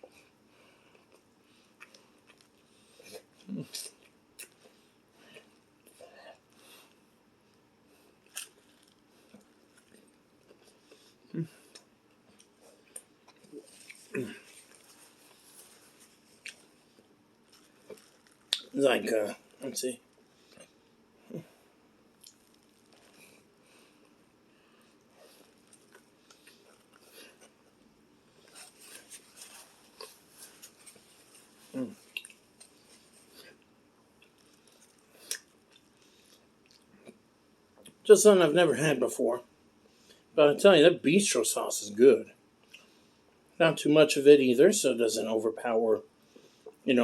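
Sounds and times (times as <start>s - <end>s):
chewing and mouth sounds: 0.9s - 7.0s, 8.2s - 18.8s, 22.1s - 24.2s, 24.9s - 27.7s, 28.3s - 37.2s
wet mouth clicks: 32.1s - 32.4s.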